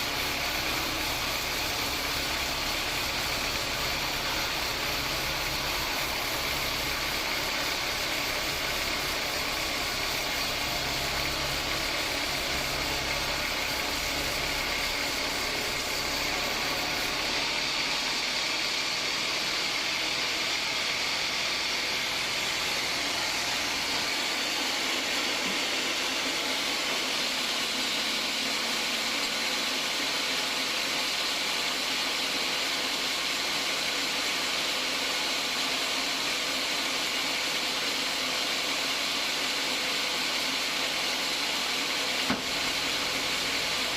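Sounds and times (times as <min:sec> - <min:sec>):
band saw cutting log: 0:00.0 - 0:43.9.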